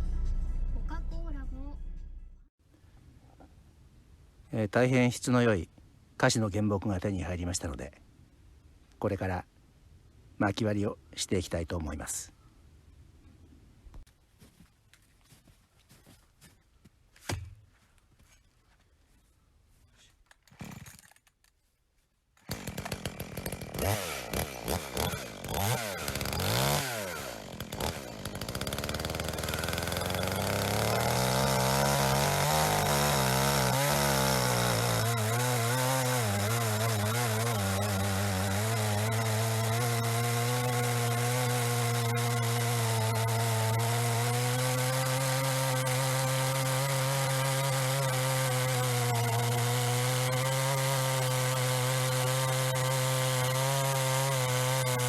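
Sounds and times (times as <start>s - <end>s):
small petrol engine running: 23.4s - 44.6s.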